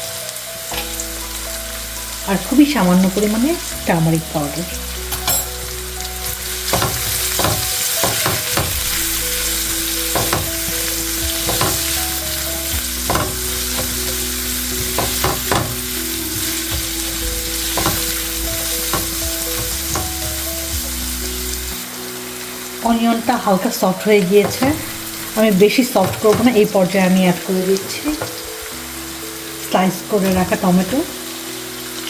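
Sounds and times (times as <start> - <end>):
vegetables sizzling in hot oil: 0.0 - 32.0.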